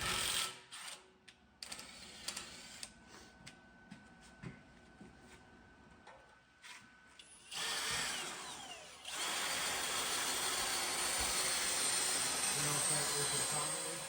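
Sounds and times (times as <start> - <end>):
power tool running: 7.5 - 14.0.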